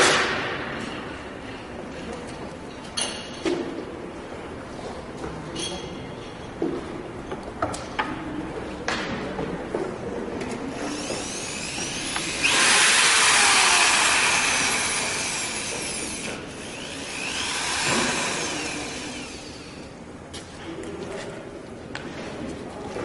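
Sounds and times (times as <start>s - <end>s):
corded drill running: 10.7s - 20.0s.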